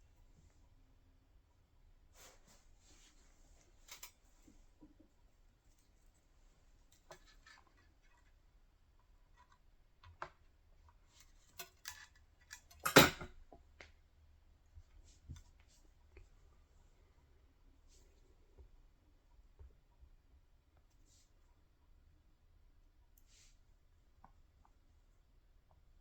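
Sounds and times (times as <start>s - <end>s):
tools clicking on a workbench: 11.6s - 13.4s.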